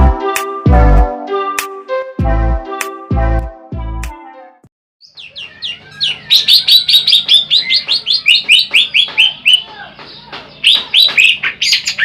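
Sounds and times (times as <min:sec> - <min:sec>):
bird singing whistled notes: 0:05.0 - 0:09.7.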